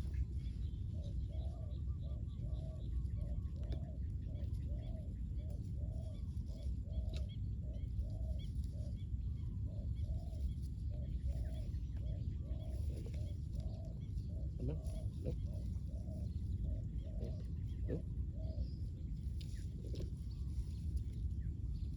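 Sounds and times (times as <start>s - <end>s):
constant low rumble: 0.0s - 21.9s
dove cooing: 11.0s - 18.6s.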